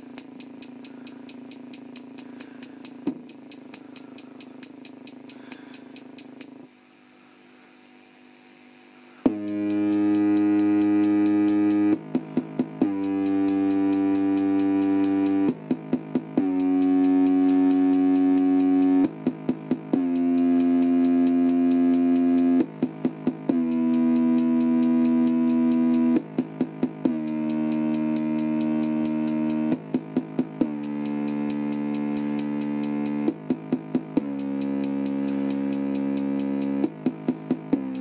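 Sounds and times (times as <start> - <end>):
fast high ticking: 0.0 - 6.6
held synth notes: 9.3 - 12.0, 12.8 - 15.5, 16.4 - 19.1.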